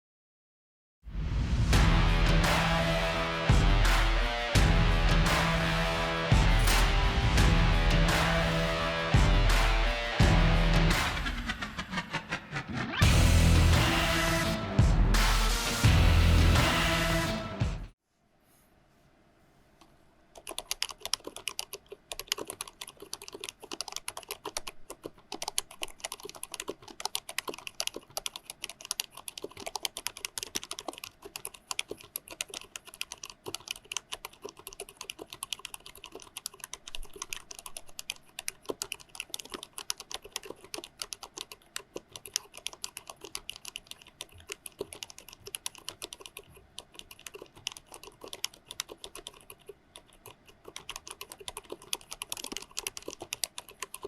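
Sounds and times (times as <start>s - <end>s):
fast typing on mechanical keyboard: 20.4s - 54.0s.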